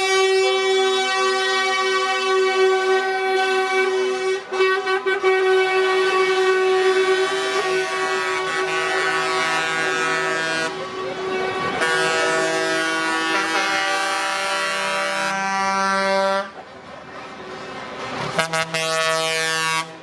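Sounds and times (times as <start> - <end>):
lorry air horns blasting: 0.0 - 16.6, 18.3 - 20.0.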